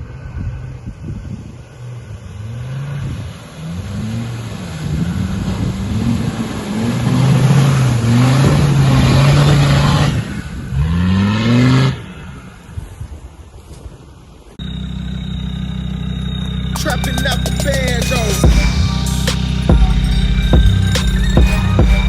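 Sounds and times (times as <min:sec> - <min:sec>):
engine revving under load: 0:00.0 - 0:13.2.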